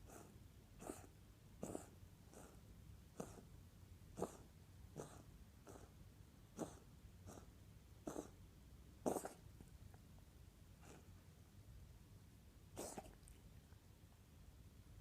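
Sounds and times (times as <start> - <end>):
pet animal coughing: 0.0 - 2.6, 3.2 - 3.4, 5.0 - 5.9, 6.6 - 7.5, 8.1 - 8.4, 9.0 - 9.4, 12.8 - 13.3.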